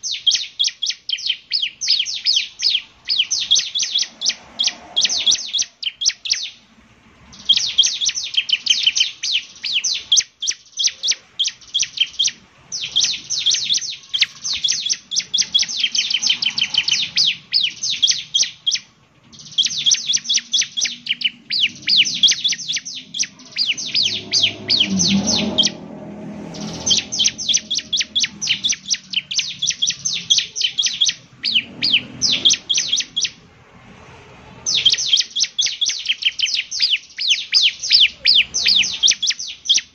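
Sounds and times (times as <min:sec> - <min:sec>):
bird singing high trills: 0:00.0 - 0:06.7, 0:07.3 - 0:33.5, 0:34.6 - 0:39.9.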